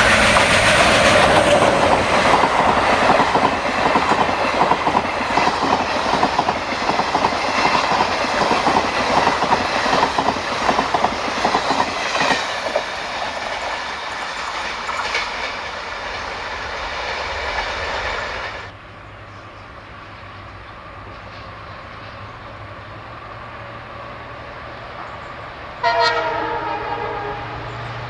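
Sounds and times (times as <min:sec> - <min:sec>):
train wheels clattering over rails: 0:00.0 - 0:18.7.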